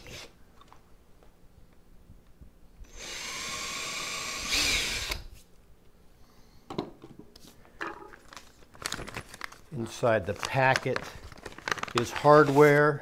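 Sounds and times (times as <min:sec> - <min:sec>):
power drill drilling into wall: 0:02.9 - 0:05.3.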